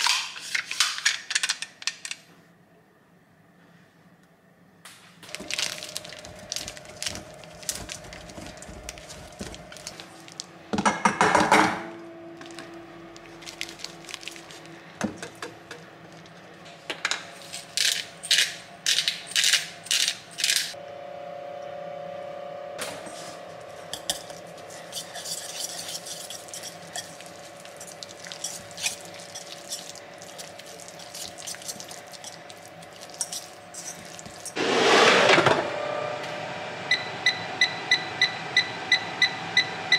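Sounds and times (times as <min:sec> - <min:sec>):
steady hum: 0:02.5 - 0:38.3
utensils clinking against dishes: 0:23.9 - 0:34.6.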